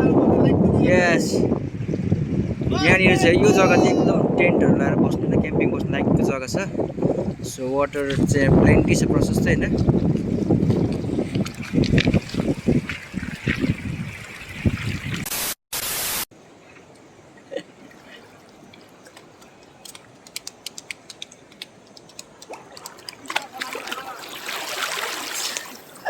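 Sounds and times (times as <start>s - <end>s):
wind rumble on microphone: 0.0s - 15.3s
rushing water: 7.0s - 26.0s
water trickling and dripping: 9.6s - 15.2s, 16.7s - 26.0s.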